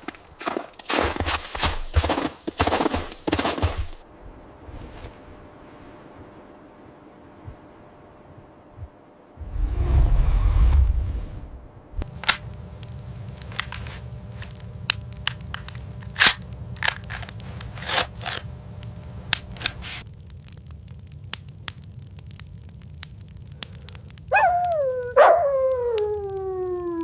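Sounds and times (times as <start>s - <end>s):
wood fire crackling and popping: 0.0s - 4.0s, 10.8s - 27.0s
wolf pup howling: 24.3s - 27.0s.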